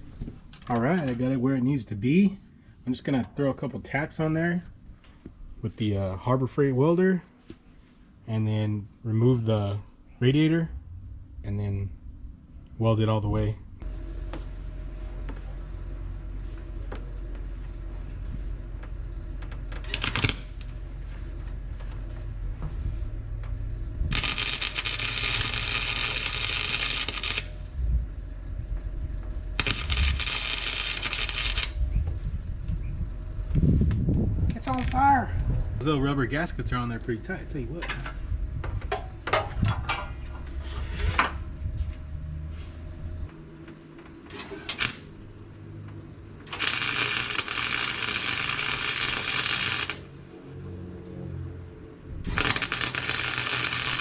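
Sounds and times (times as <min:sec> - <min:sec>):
welder arc crackling and hissing: 0:19.8 - 0:21.2, 0:24.1 - 0:27.7, 0:29.6 - 0:31.8, 0:44.3 - 0:45.4, 0:46.4 - 0:50.2, 0:52.3 - 0:54.0
metal clanks and knocks: 0:37.8 - 0:41.4.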